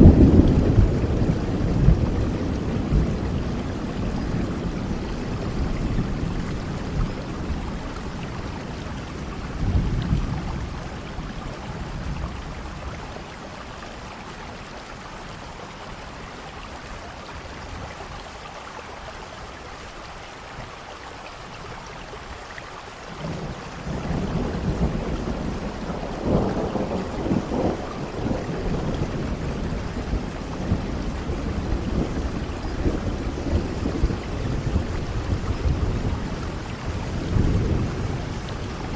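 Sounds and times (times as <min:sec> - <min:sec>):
rolling thunder: 0:00.0 - 0:13.4, 0:23.1 - 0:38.9
steady rain: 0:00.0 - 0:38.9.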